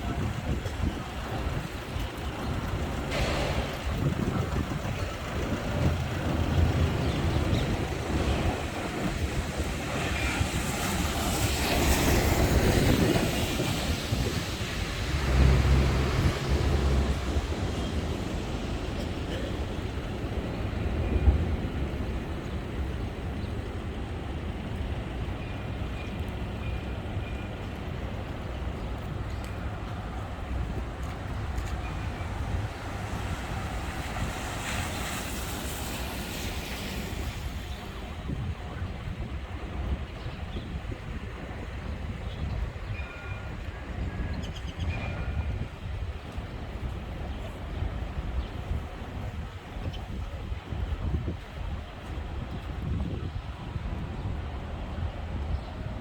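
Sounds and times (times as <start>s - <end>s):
tyres hissing on wet road: 0.0s - 28.5s, 29.2s - 39.9s
traffic rumble: 0.0s - 56.0s
tyre hiss on wet road: 32.6s - 38.2s.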